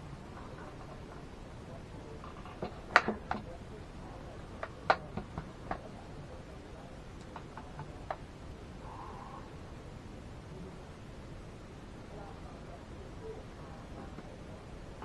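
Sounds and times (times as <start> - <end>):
clicks and taps on computer hardware: 2.5 - 3.5.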